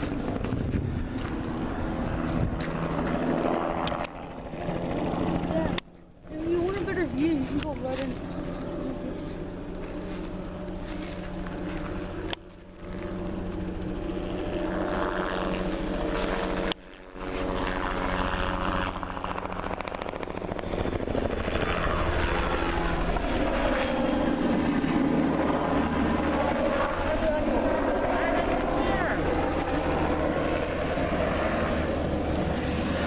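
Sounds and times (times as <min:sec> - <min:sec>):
helicopter rotor and engine: 0:00.0 - 0:33.0.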